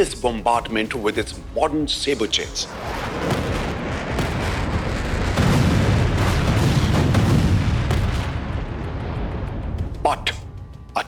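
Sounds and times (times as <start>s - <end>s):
rumble of explosions: 2.4s - 10.9s.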